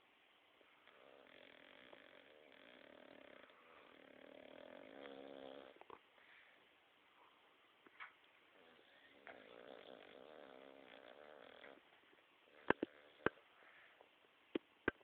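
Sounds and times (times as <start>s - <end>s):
dog snoring: 0.8s - 6.0s, 8.5s - 11.9s, 12.5s - 13.5s.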